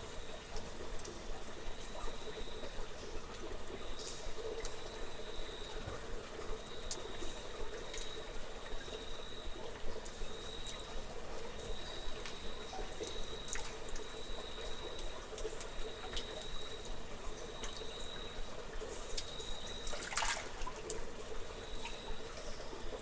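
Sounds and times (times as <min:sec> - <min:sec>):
water dripping and trickling: 0:00.0 - 0:23.0
water splash: 0:19.9 - 0:20.8.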